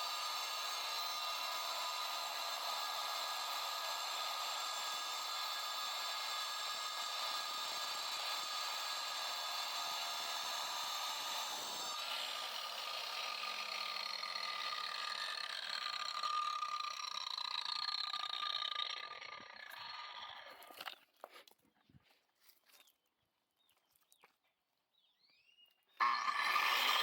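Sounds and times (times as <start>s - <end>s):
angle grinder whining and grinding: 0.0s - 21.0s, 26.0s - 27.0s.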